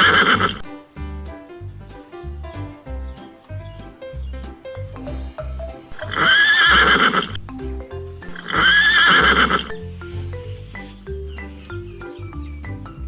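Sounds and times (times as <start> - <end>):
background music with steady beat: 0.0 - 13.0.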